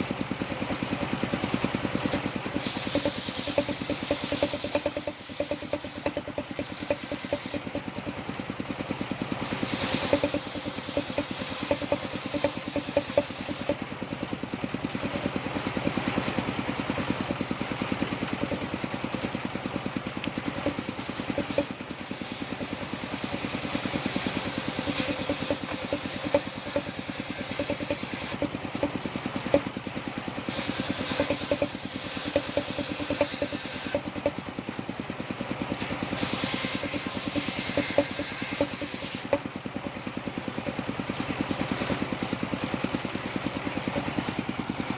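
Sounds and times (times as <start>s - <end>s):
engine-driven saw running: 0.0s - 44.9s
saw hissing through wood: 2.4s - 7.9s, 9.4s - 13.8s, 20.6s - 29.0s, 30.3s - 34.2s, 36.0s - 39.4s.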